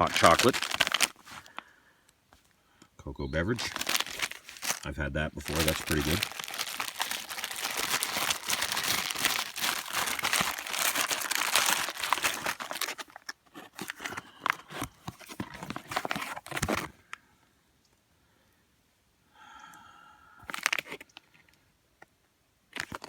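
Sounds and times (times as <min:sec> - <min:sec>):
plastic packets crinkling: 0:00.0 - 0:01.7, 0:03.4 - 0:17.0, 0:20.5 - 0:21.0, 0:22.7 - 0:23.0.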